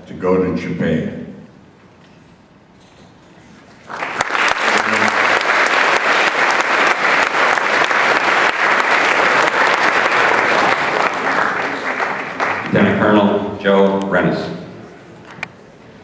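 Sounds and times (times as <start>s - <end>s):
audience applause: 3.8s - 12.7s.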